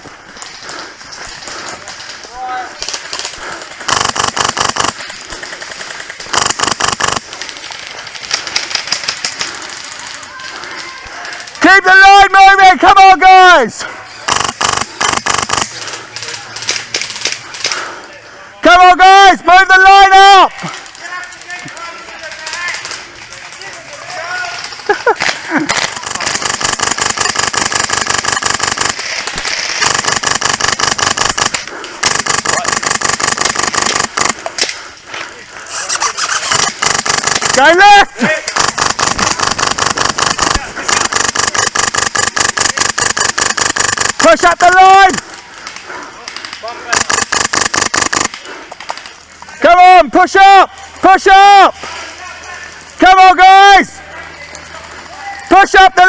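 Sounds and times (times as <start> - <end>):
airsoft gun rapid shots: 2.8 - 9.8, 14.2 - 17.8, 25.2 - 34.7, 35.7 - 45.3, 46.4 - 49.1
distant rapid airsoft gunfire: 2.8 - 9.8, 14.2 - 17.9, 25.2 - 34.9, 36.0 - 45.3, 46.4 - 49.1.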